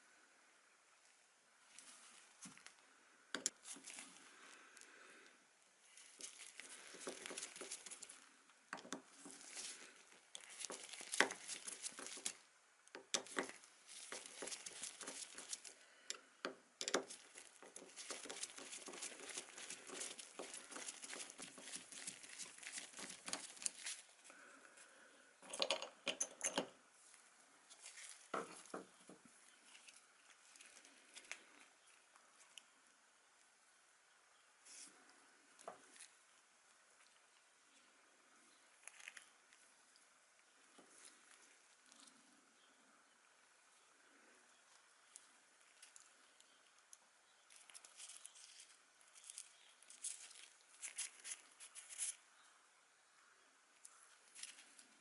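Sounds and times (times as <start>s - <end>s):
rustling and clicks of handling parts: 1.7s - 4.9s, 5.9s - 24.4s, 25.4s - 32.7s.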